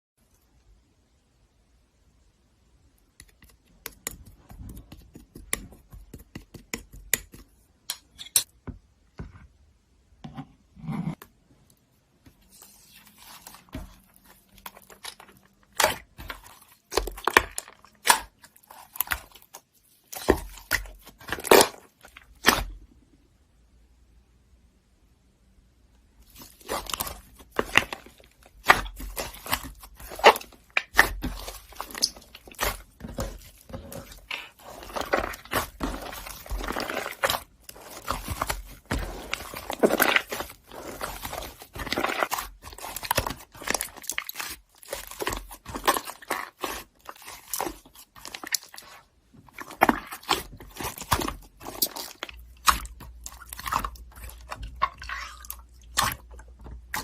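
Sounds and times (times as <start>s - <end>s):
slime squished by hand: 26.2s - 57.0s.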